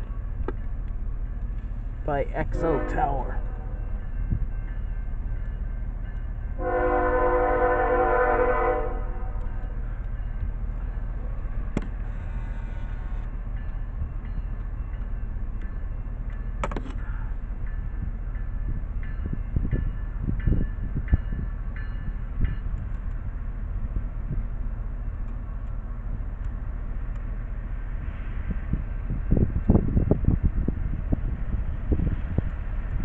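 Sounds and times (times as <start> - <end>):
train rumbling past: 0.0 - 33.0
train horn: 2.5 - 3.8, 6.6 - 9.5.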